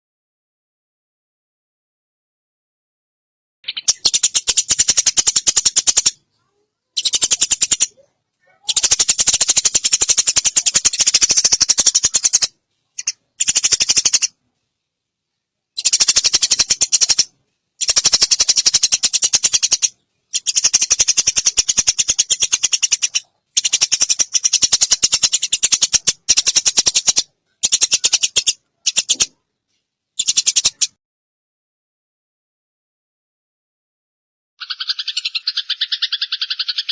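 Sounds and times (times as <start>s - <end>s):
sparrow chirping rapidly: 3.6s - 14.4s, 15.8s - 29.4s, 30.2s - 31.0s, 34.6s - 36.9s.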